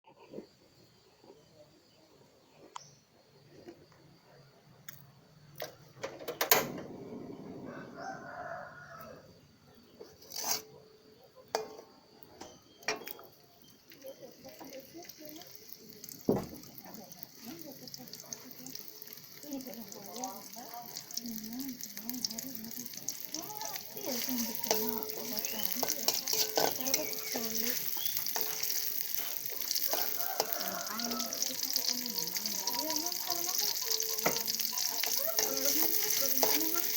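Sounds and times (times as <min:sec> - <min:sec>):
rooster crowing: 0:07.5 - 0:09.4, 0:29.5 - 0:32.8
food sizzling in a frying pan: 0:12.9 - 0:36.9.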